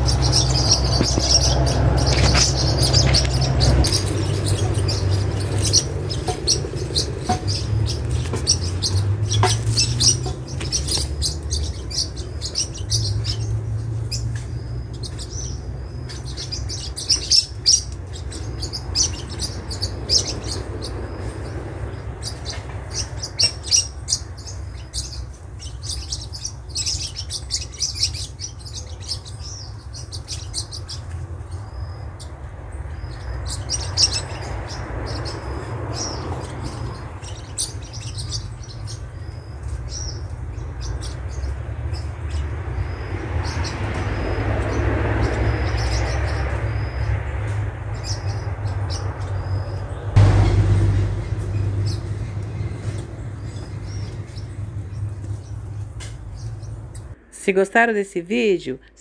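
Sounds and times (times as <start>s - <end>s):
parakeets chattering: 0.0s - 57.2s
low rumble: 46.2s - 57.2s.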